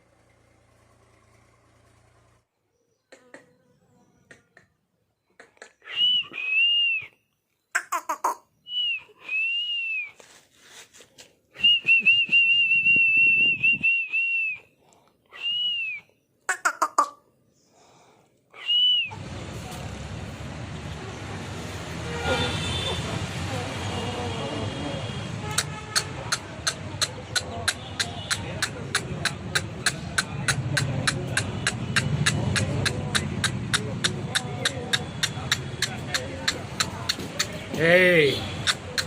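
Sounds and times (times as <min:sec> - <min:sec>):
person whistling: 0:05.8 - 0:07.2, 0:08.7 - 0:10.2, 0:11.6 - 0:14.7, 0:15.3 - 0:16.1, 0:18.6 - 0:19.2
sharp clicks: 0:25.5 - 0:37.8.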